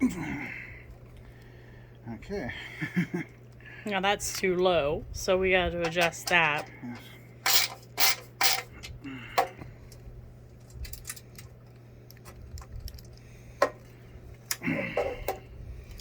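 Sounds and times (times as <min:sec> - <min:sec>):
metal clinks and clicks: 0:07.4 - 0:08.7.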